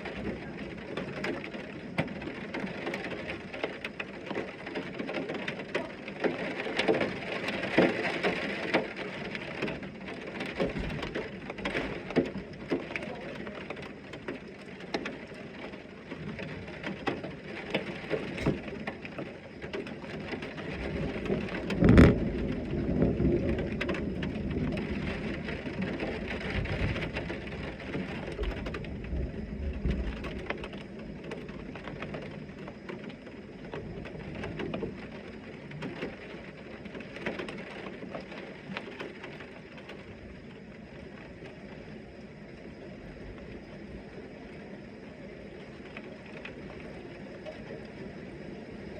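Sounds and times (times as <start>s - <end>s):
heavy rain falling: 0.0s - 48.9s
thunder clap and rumbling: 20.7s - 32.3s.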